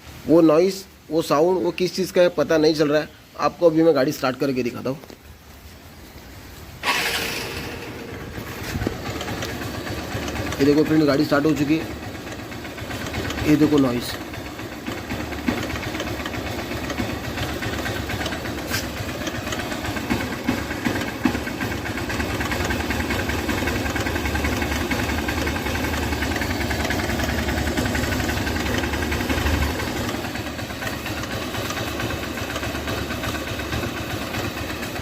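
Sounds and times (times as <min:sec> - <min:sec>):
motorcycle engine idling: 0:06.1 - 0:35.0
rhythmic ticking from engine: 0:08.1 - 0:35.0.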